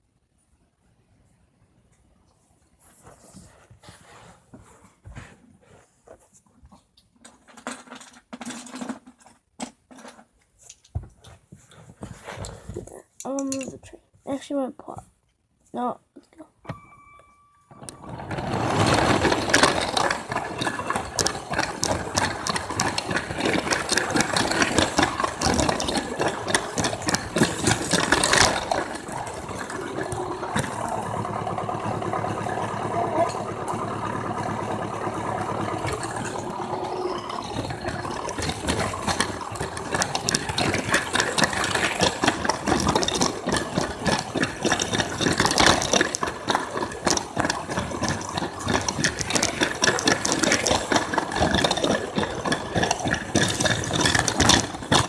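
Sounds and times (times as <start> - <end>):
train clattering rattle: 17.8 - 55.0
toy train motor whir: 17.9 - 55.0.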